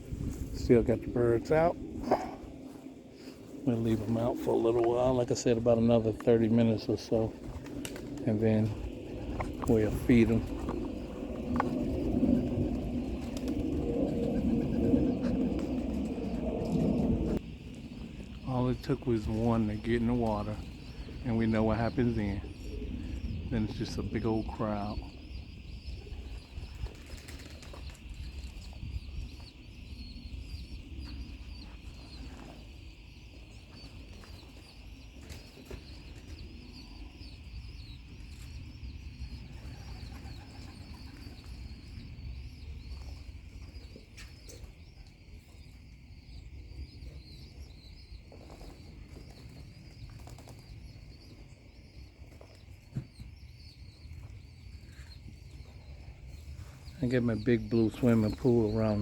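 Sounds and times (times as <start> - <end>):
pigeons flapping wings in water: 6.6 - 17.4, 26.2 - 28.8, 39.4 - 41.9, 48.4 - 51.0.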